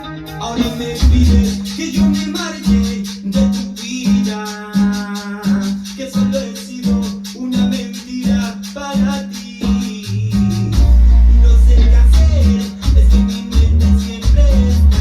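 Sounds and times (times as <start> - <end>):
repeating bass note: 0.0 - 3.0, 10.0 - 15.0
quick shaker rhythm: 0.0 - 15.0.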